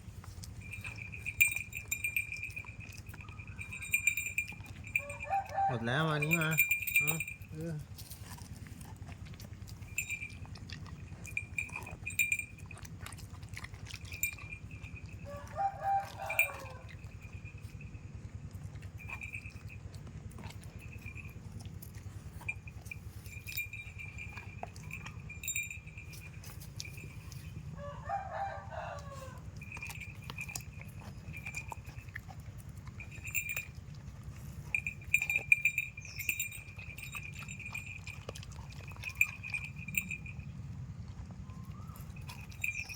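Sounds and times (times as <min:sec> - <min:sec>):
dog crunching on coconut: 0:00.0 - 0:42.9
rooster crowing: 0:05.0 - 0:06.3, 0:15.2 - 0:17.0, 0:27.8 - 0:29.6.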